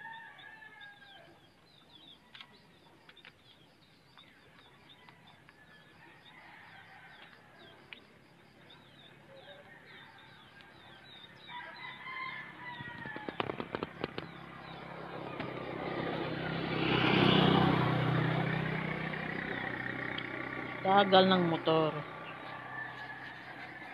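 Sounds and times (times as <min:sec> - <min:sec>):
rooster crowing: 0:11.4 - 0:13.4, 0:22.4 - 0:23.9
motorcycle engine: 0:13.1 - 0:23.9.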